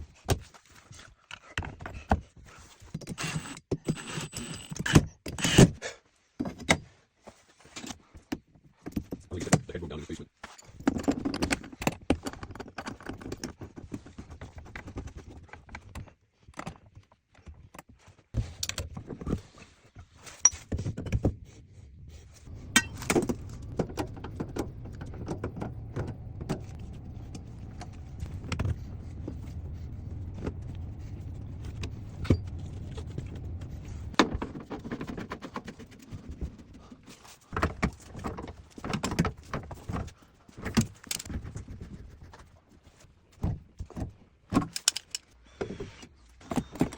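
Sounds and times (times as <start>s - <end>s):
steady low hum: 22.4s - 34.2s.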